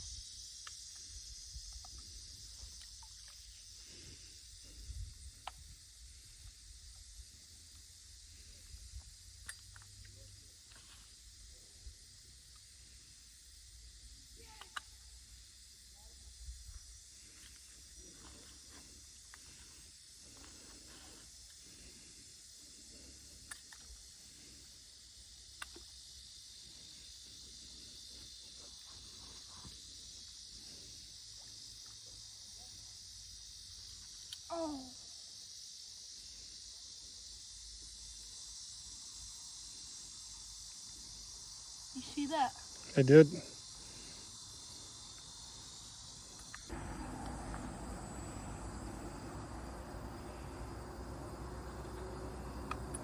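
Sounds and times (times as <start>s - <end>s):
high-pitched insect chorus: 0.0s - 53.0s
low background rumble: 46.7s - 53.0s.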